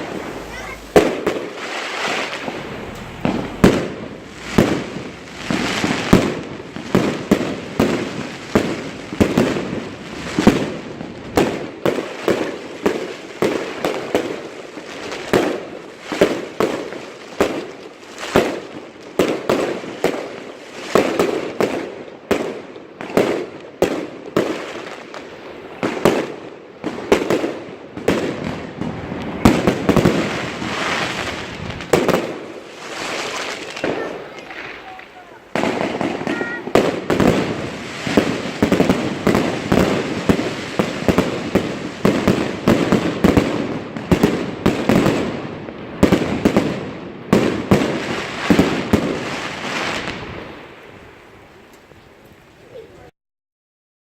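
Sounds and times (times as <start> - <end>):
distant echoing rumble of bursts: 0.0 - 6.7
fireworks and firecrackers banging: 0.0 - 52.9.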